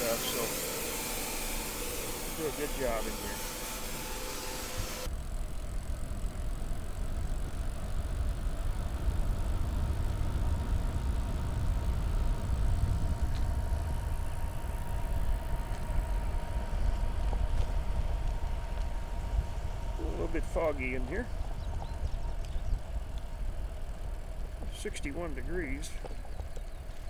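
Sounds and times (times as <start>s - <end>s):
faint steady whine: 0.0s - 27.0s
wind buffeting microphone: 8.8s - 24.7s.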